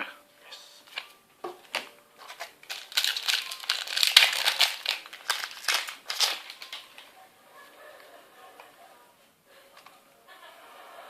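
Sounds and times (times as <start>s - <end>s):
foil wrapper crinkling and tearing: 1.7s - 7.1s.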